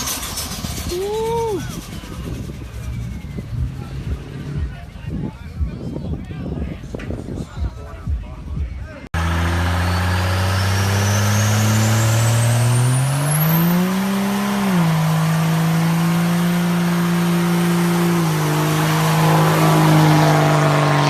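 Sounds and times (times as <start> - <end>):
diesel truck engine revving: 0.0 - 5.0, 9.0 - 21.0
turbocharger whistle: 9.2 - 21.0.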